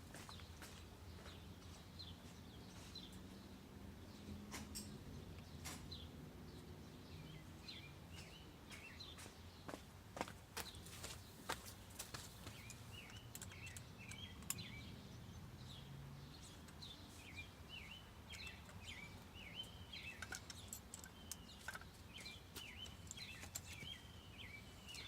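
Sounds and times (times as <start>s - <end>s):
bird chirping: 0.1s - 9.8s, 10.6s - 25.0s.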